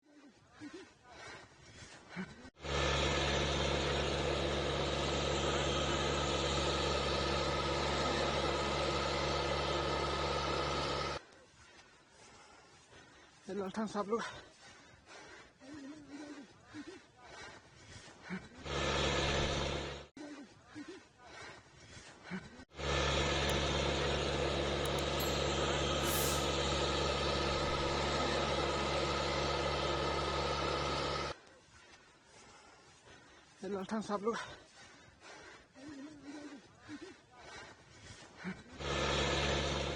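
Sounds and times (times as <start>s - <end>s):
heavy engine running: 2.6s - 11.2s, 18.6s - 20.1s, 22.7s - 31.4s, 38.8s - 39.9s.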